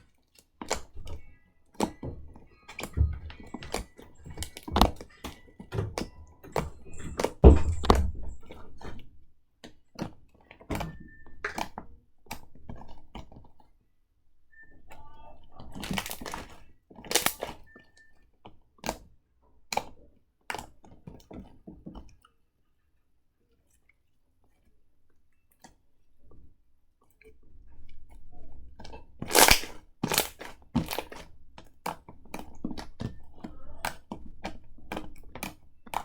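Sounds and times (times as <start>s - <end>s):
slime squished by hand: 15.8s - 17.6s, 29.3s - 31.2s.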